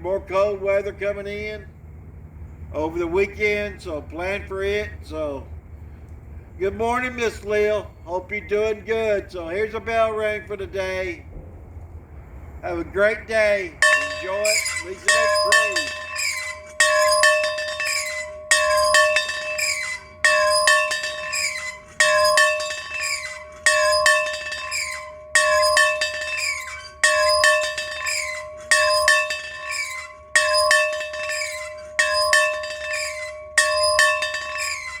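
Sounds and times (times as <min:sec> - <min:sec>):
bell ringing: 0:13.8 - 0:35.0.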